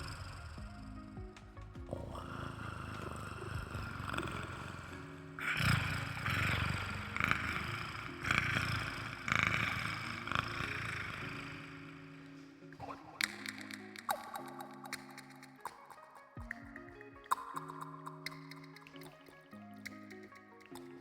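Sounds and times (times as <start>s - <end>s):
person imitating cat purr: 1.9s - 11.7s.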